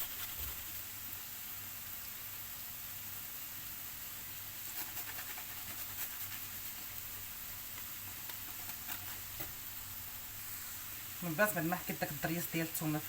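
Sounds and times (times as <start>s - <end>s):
onion sizzling in oil: 0.0s - 13.0s
garlic scraping on grater: 4.6s - 6.9s, 8.0s - 9.6s.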